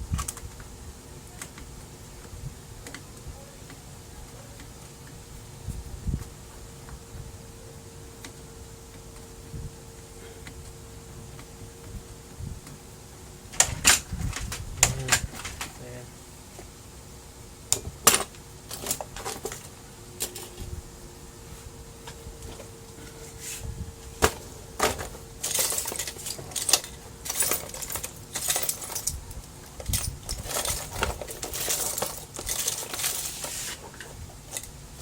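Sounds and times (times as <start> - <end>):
printer parts scraping: 13.5 - 15.8, 18.0 - 20.7, 22.0 - 35.0
printer parts clicking and rattling: 13.5 - 15.9, 17.7 - 20.7, 24.0 - 35.0.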